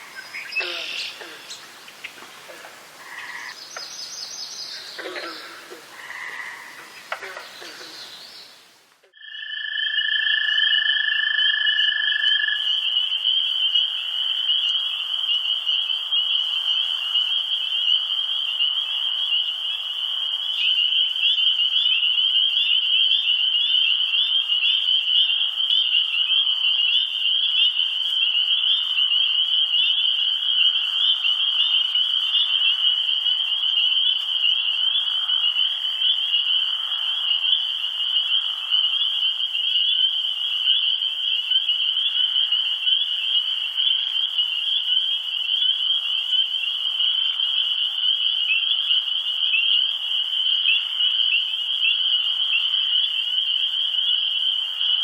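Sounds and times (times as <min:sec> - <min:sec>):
chorus of trilling animal calls: 0:04.7 - 0:08.6.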